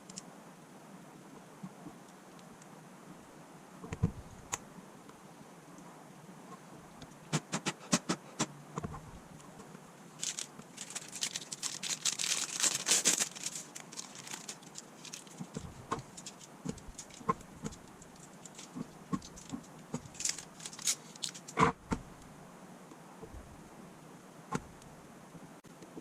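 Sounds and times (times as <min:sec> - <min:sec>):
crinkling and scratching: 0:08.8 - 0:22.2.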